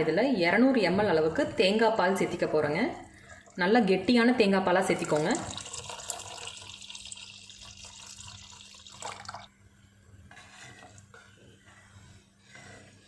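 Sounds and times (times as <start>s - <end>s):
liquid pouring into pot: 4.9s - 9.5s.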